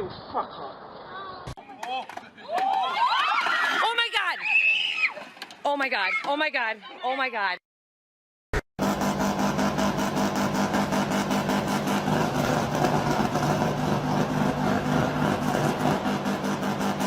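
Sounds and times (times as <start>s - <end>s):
vehicle engine running steadily: 8.8s - 17.0s.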